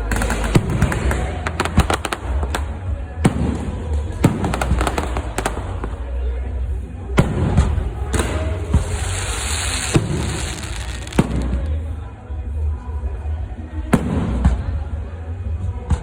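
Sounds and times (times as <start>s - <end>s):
fireworks banging and crackling: 0.0s - 6.2s, 7.2s - 11.9s.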